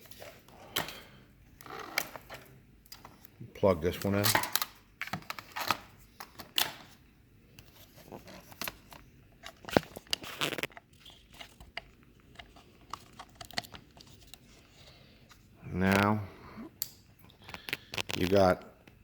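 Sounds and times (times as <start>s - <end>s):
cable rustling: 7.6s - 16.1s, 17.2s - 18.5s.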